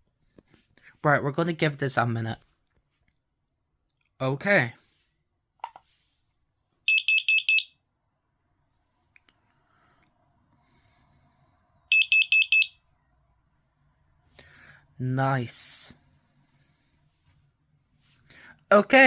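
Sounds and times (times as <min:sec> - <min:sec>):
smoke alarm beeping: 0:06.9 - 0:07.8, 0:11.9 - 0:12.8.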